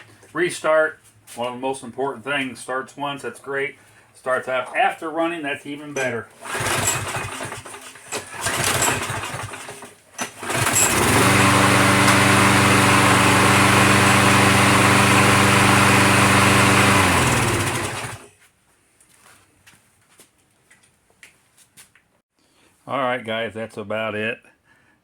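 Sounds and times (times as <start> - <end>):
engine starting noise: 6.4 - 13.8, 16.7 - 18.3
push mower engine running: 6.4 - 18.3.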